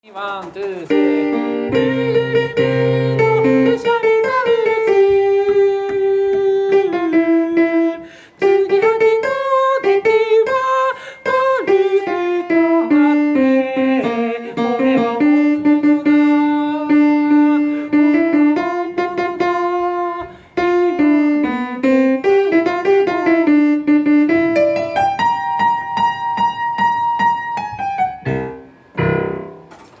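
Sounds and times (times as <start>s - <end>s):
keyboard melody in held notes: 0.9s - 7.6s.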